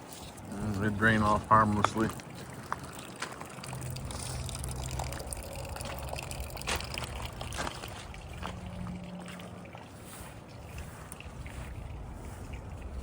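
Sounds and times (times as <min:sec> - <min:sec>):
rainwater trickling and dripping: 0:00.0 - 0:13.0.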